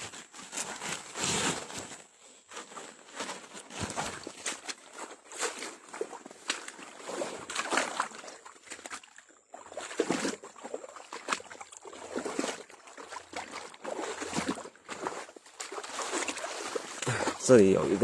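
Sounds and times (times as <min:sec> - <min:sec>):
water sloshing and splashing: 0:00.0 - 0:18.0
water trickling: 0:05.9 - 0:18.0.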